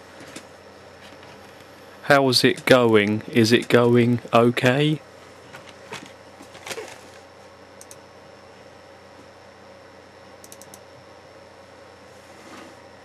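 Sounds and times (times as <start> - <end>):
room hiss: 1.5 - 5.3
faint high ticks: 7.8 - 8.0, 10.4 - 10.8.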